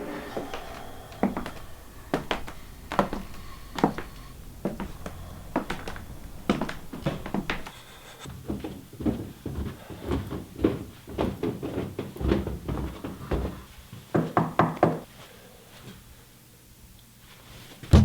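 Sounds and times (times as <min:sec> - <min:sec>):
irregular knocks and thumps: 0:00.3 - 0:07.7.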